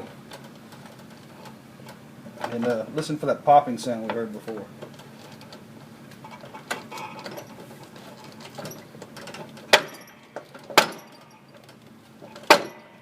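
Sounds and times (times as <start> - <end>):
loud sharp gear pops: 9.7 - 10.1, 12.4 - 12.9.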